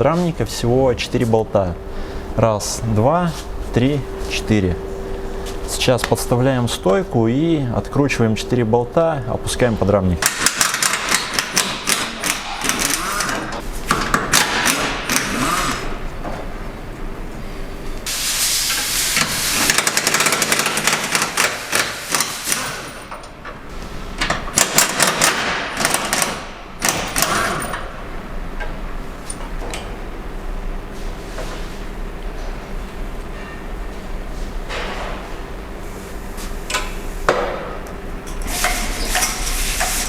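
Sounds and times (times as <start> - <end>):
impact wrench hammering: 10.2 - 15.9, 19.2 - 23.1, 24.2 - 27.8.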